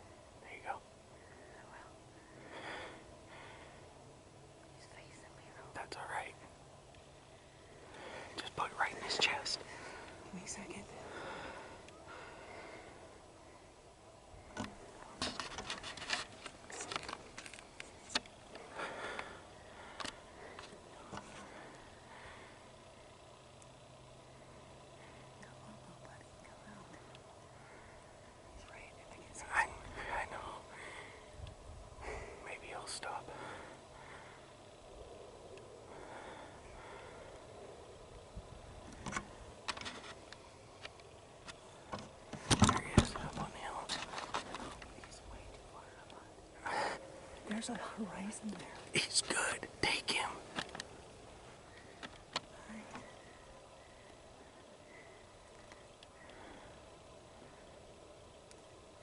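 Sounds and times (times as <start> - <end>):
low hiss: 0.0 - 59.0
light handling clicks and rustles: 14.4 - 19.3, 19.9 - 21.9, 38.4 - 46.2, 50.1 - 51.1, 51.7 - 56.4.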